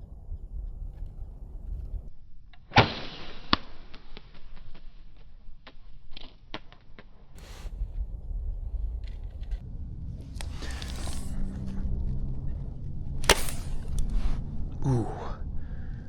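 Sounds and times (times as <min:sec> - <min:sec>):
wind rumble on microphone: 0:00.0 - 0:02.1, 0:07.4 - 0:16.0
rush of noise: 0:07.4 - 0:16.0
bow string snap: 0:10.4 - 0:11.7, 0:13.2 - 0:14.3.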